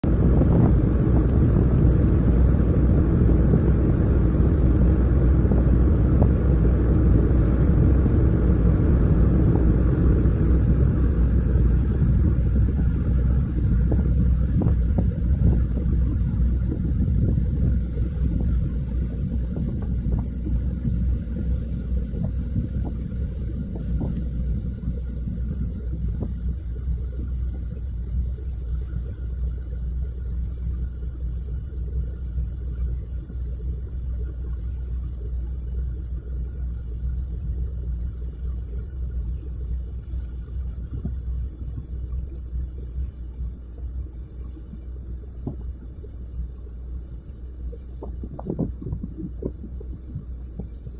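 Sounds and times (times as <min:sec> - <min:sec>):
wind buffeting microphone: 0:00.0 - 0:29.3, 0:40.4 - 0:42.7, 0:47.7 - 0:50.9.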